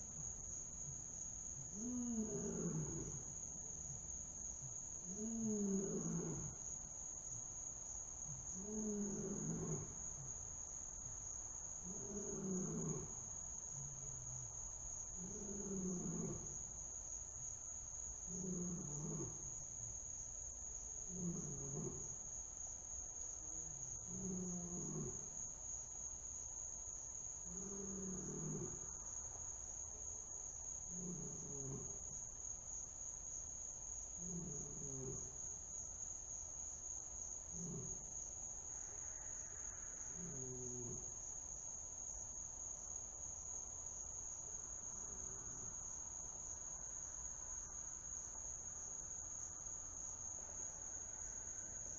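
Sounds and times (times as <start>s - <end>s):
crickets chirring: 0.0s - 51.9s
big cat snoring: 1.6s - 4.0s, 5.0s - 6.7s, 8.3s - 10.3s, 11.8s - 14.5s, 15.2s - 16.6s, 18.3s - 19.6s, 21.0s - 22.2s, 23.6s - 25.3s, 27.4s - 28.9s, 30.8s - 32.2s, 34.2s - 35.4s, 37.5s - 38.2s, 38.9s - 41.2s.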